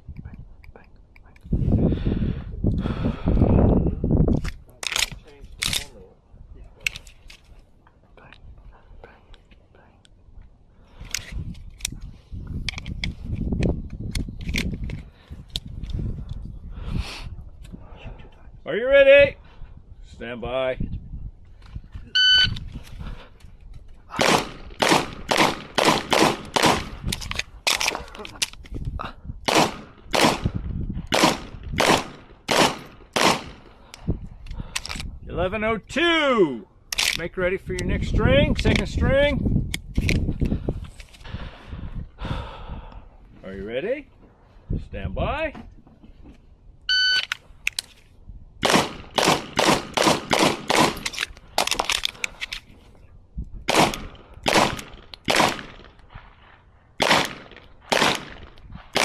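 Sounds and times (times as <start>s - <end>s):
airsoft pistol shots: 24.2s - 26.9s, 29.5s - 30.5s, 31.1s - 33.6s, 48.6s - 51.0s, 53.7s - 55.9s, 57.0s - 59.0s.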